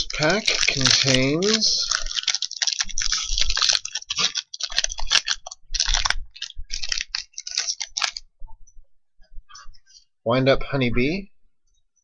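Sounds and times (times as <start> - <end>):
foil wrapper crinkling: 0.0 - 8.2.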